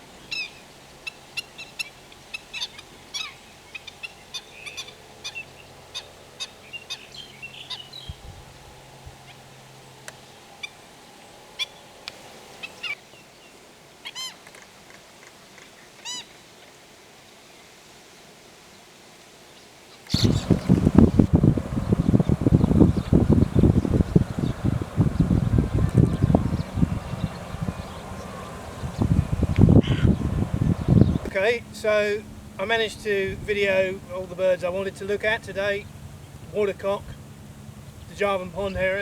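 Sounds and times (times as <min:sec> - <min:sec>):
birds calling: 0:00.0 - 0:14.5, 0:20.1 - 0:39.0
loud rushing noise: 0:20.2 - 0:31.4.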